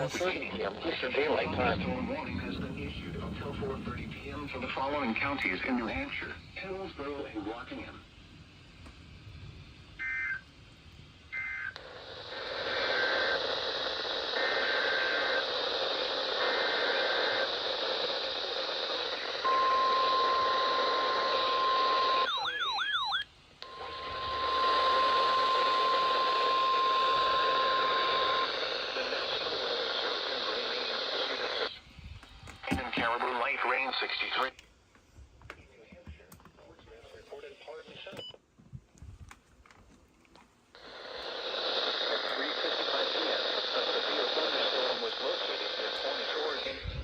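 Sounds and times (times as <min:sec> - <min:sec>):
warbling data bursts: 0:00.0 - 0:07.2
radio static: 0:00.0 - 0:08.0, 0:11.4 - 0:22.8, 0:23.6 - 0:34.6, 0:40.8 - 0:47.0
long alarm tone: 0:19.4 - 0:28.6.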